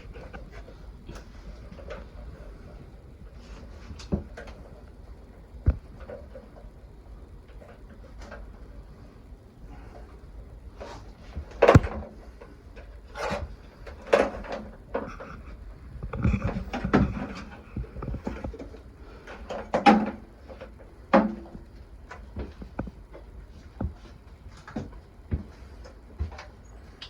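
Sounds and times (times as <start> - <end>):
wires clicking and rubbing: 12.9 - 19.0.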